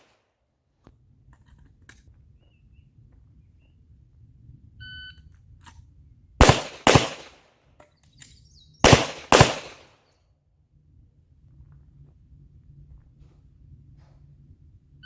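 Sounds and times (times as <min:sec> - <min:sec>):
handgun shots: 0:06.4 - 0:07.4, 0:08.8 - 0:09.9.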